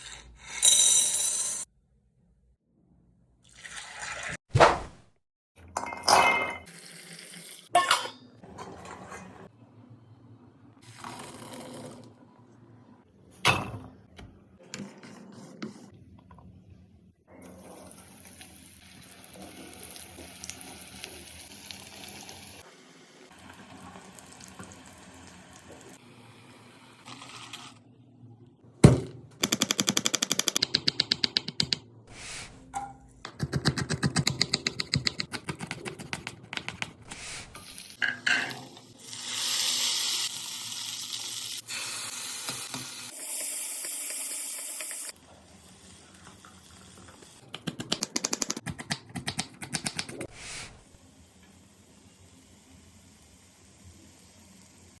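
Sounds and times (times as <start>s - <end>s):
utensils clinking against a pan: 38.0s - 38.8s.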